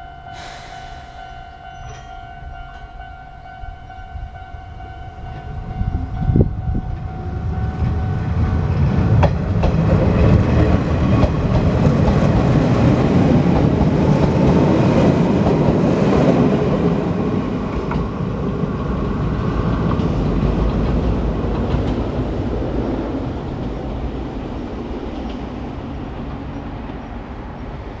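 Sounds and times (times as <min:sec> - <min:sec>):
steady high tone: 0:00.0 - 0:08.9
train wheels clattering over rail joints: 0:08.7 - 0:16.6.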